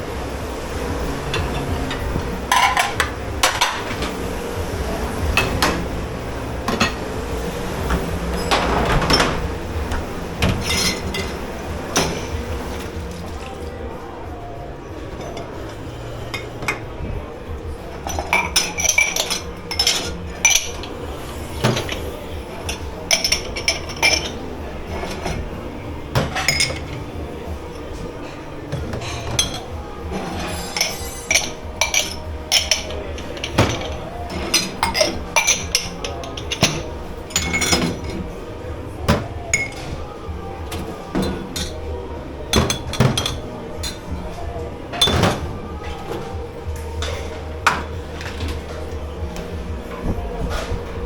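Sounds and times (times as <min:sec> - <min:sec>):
steady low hum: 0:00.0 - 0:51.0
dishes and cutlery clinking: 0:00.4 - 0:51.0.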